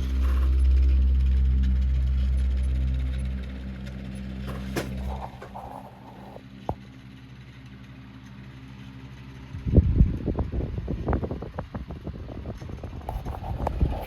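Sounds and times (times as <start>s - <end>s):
electric fan motor humming: 0.0s - 14.0s
knocking and rubbing on microphone: 4.4s - 6.8s, 12.6s - 14.0s.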